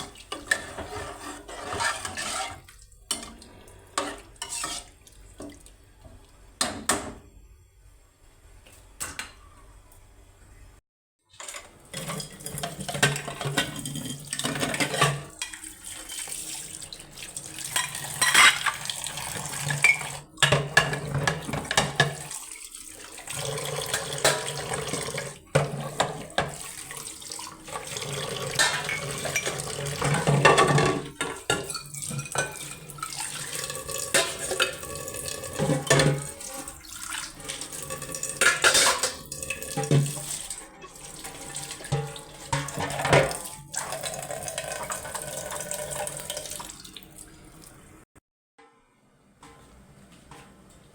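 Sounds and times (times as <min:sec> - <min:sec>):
metal pots and pans clattering: 0:00.0 - 0:05.6, 0:11.3 - 0:16.3, 0:17.6 - 0:22.3, 0:23.3 - 0:44.0.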